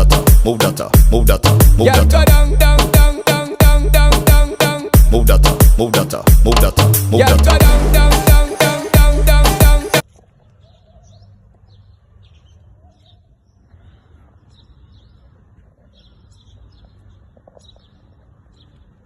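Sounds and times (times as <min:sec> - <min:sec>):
dancehall song: 0:00.0 - 0:10.0
small birds chirping: 0:10.0 - 0:19.0.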